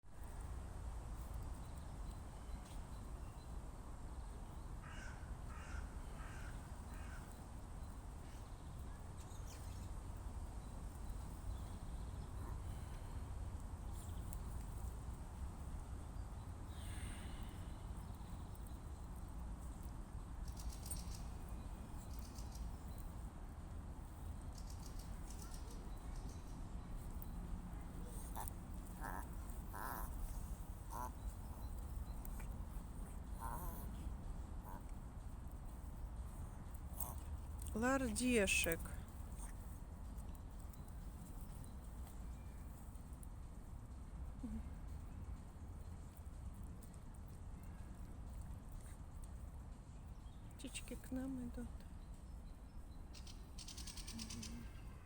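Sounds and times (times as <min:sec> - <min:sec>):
crow cawing: 0:04.8 - 0:07.2, 0:28.4 - 0:30.2, 0:30.9 - 0:31.2.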